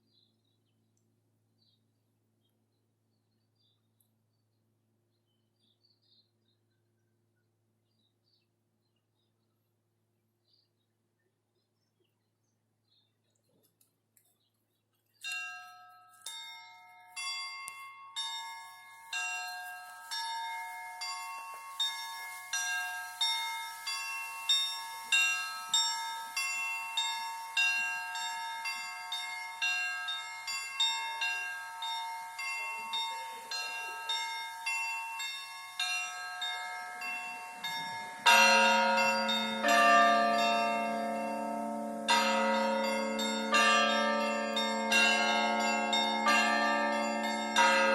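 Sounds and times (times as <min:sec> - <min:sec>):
small high-pitched bells struck: 0:15.2 - 0:47.9
large deep bell stroke: 0:31.0 - 0:47.9.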